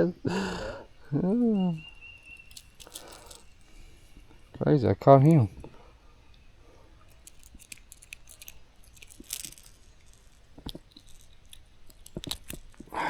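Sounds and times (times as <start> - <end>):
tackle clicks and rustles: 2.2 - 5.9, 7.0 - 13.0.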